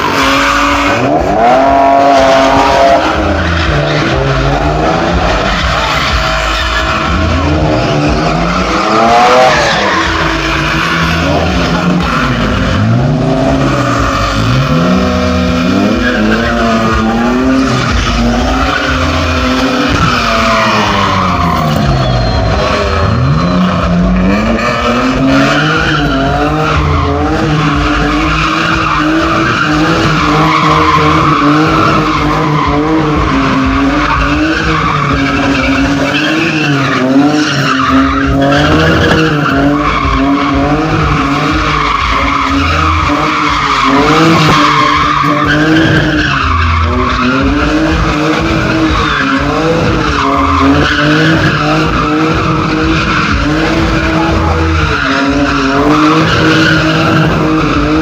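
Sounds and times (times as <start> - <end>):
car engine revving hard: 0.0 - 58.0
tyres screeching: 0.0 - 58.0.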